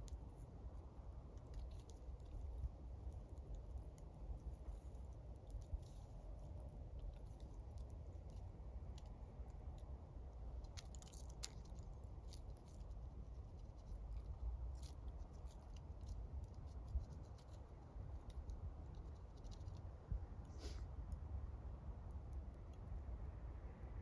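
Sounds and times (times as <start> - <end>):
low steady rumble: 0.0 - 24.0.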